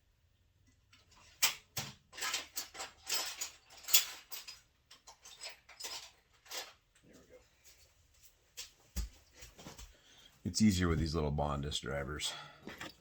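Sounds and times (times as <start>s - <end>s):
tools clinking and knocking: 0.9s - 7.2s.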